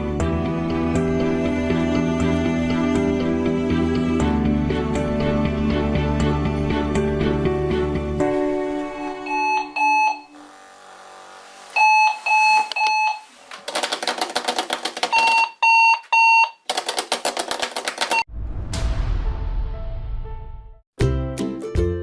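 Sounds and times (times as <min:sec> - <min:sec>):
alarm clock beeping: 0:09.1 - 0:10.4, 0:11.7 - 0:13.3, 0:15.1 - 0:16.6.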